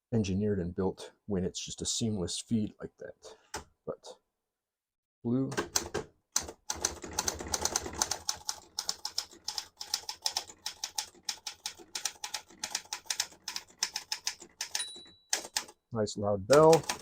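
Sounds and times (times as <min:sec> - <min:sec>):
manual typewriter typing: 0:05.6 - 0:15.8, 0:16.5 - 0:17.0.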